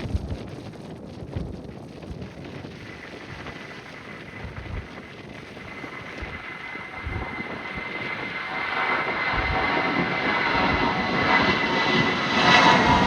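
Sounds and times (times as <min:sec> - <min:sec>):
wind buffeting microphone: 0:00.0 - 0:13.0
jet engines whining: 0:03.6 - 0:13.0.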